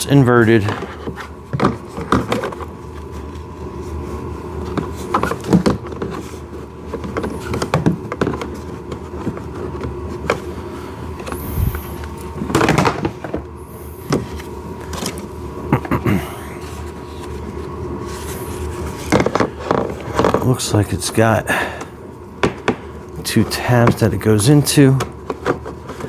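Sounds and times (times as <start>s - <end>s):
faint hum: 0.0s - 26.0s
plastic clatter: 0.6s - 2.7s.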